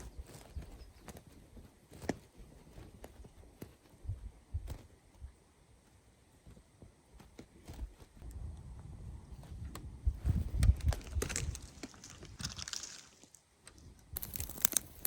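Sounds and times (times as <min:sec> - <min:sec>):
twigs crackling in a stove: 0:10.4 - 0:15.0.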